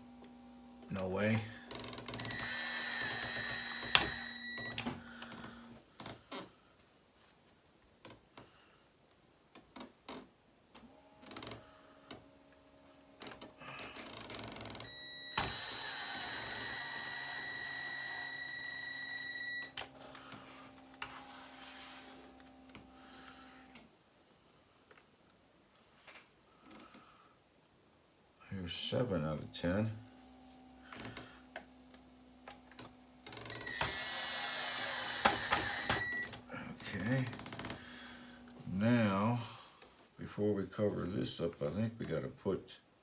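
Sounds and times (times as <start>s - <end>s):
electric screwdriver whining: 1.7s - 5.7s, 13.8s - 20.4s, 33.2s - 36.4s.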